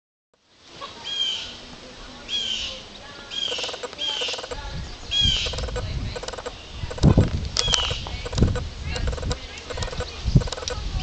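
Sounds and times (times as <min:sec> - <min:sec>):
chickens squawking: 0:02.4 - 0:10.8
chicken clucking: 0:05.2 - 0:10.8.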